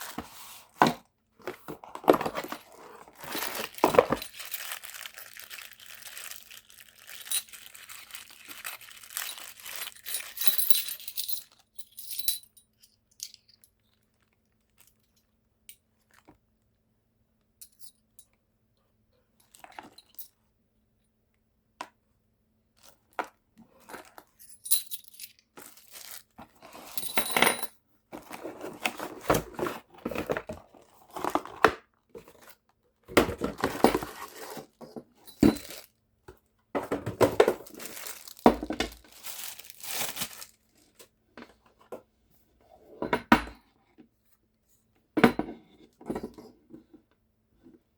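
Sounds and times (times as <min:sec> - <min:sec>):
packaging rustling: 0:01.5 - 0:11.6, 0:25.6 - 0:26.6, 0:33.4 - 0:34.8, 0:35.4 - 0:35.9, 0:37.0 - 0:41.0
packaging crinkling and tearing: 0:02.3 - 0:10.5, 0:25.6 - 0:26.4, 0:35.6 - 0:35.9, 0:37.3 - 0:41.0.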